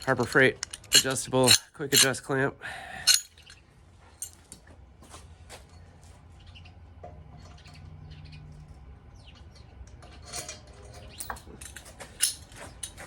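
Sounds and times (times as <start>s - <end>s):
bar clamp clicking and squeaking: 0.0s - 2.2s
low steady hum: 0.0s - 13.0s.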